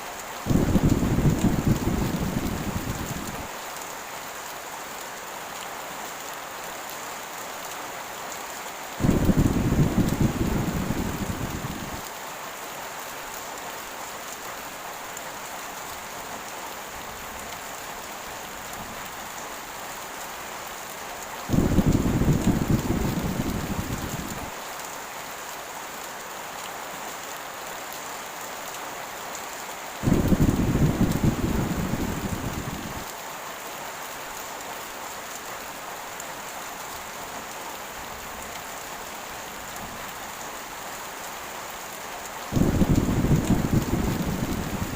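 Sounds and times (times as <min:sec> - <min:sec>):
heavy rain falling: 0:00.0 - 0:44.9
rolling thunder: 0:00.5 - 0:03.4, 0:09.0 - 0:12.0, 0:21.5 - 0:24.5, 0:30.0 - 0:33.1, 0:42.6 - 0:44.9.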